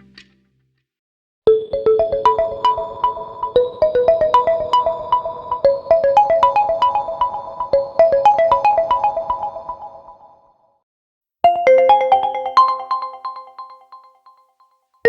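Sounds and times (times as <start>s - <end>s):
melodic phone ringtone: 11.5s - 14.4s.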